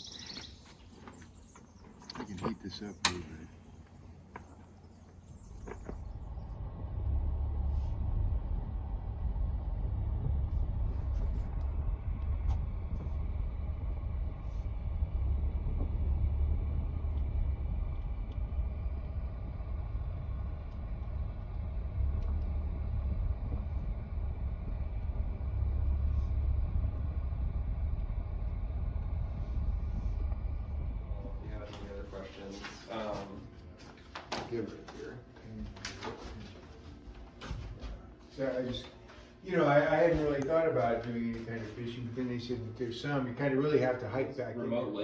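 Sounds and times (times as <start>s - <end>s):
car driving rumble inside cabin: 5.3s - 32.5s.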